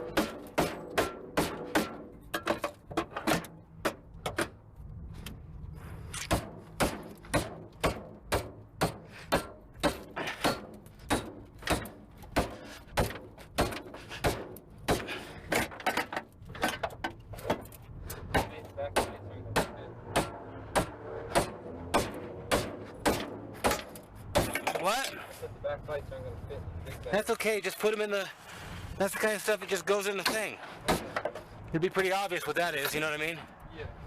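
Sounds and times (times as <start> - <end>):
hand tools knocking on car parts: 0.0 - 4.6, 6.3 - 25.0, 30.2 - 31.5.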